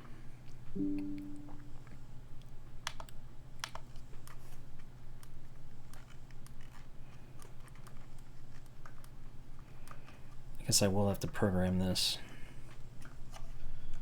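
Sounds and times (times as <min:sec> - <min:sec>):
mechanical keyboard key clicks: 0:02.8 - 0:03.9.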